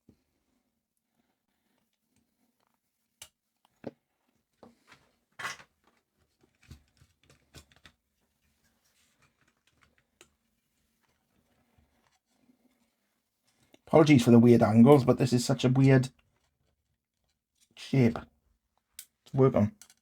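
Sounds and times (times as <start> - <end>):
small tools clicking and tapping: 18.8 - 20.0.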